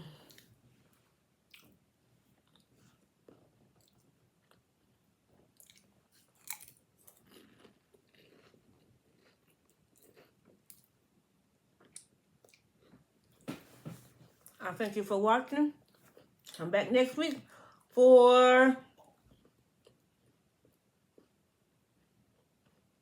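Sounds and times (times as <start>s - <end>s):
person chewing pastry: 1.4s - 13.4s, 15.9s - 16.6s, 19.0s - 23.0s.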